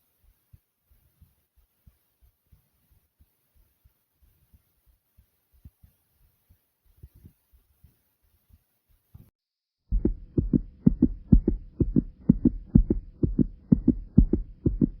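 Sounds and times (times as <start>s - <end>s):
faint steady hum: 9.9s - 15.0s
fast heartbeat: 9.9s - 15.0s.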